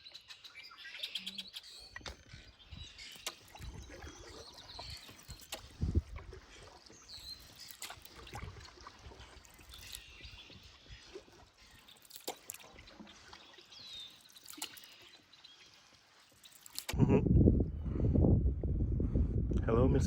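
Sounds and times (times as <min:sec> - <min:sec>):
water dripping off paddle: 0:02.8 - 0:17.0.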